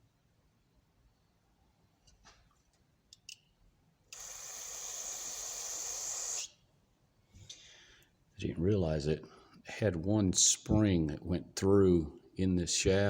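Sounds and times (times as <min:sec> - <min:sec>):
spray hiss: 0:04.2 - 0:06.6.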